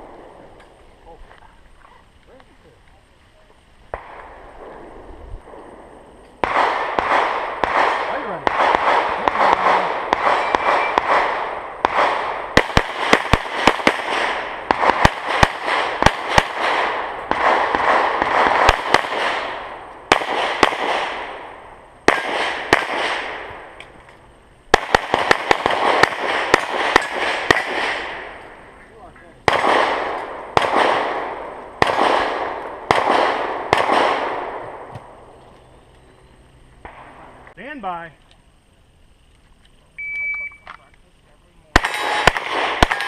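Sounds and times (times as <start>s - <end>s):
pistol shots with echo: 6.4s - 23.7s, 24.7s - 28.4s, 29.4s - 34.9s, 41.7s - 43.0s.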